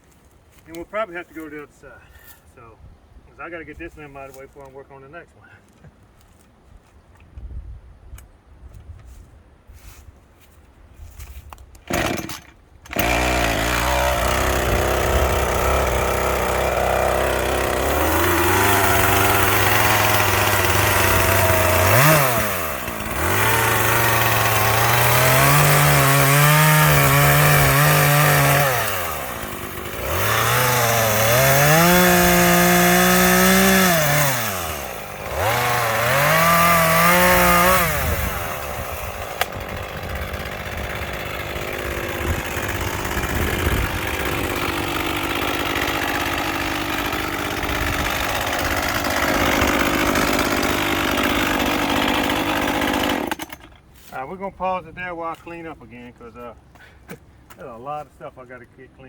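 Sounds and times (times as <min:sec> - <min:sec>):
chainsaw engine revving: 0:11.9 - 0:53.8.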